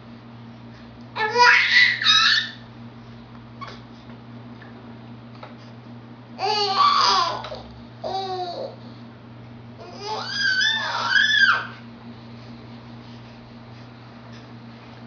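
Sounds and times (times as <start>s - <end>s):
baby squealing: 1.2s - 2.6s, 9.8s - 11.8s.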